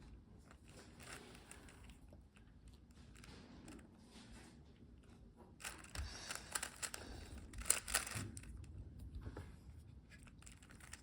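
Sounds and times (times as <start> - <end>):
puzzle cube clicking and rattling: 5.6 - 8.6, 10.2 - 11.0.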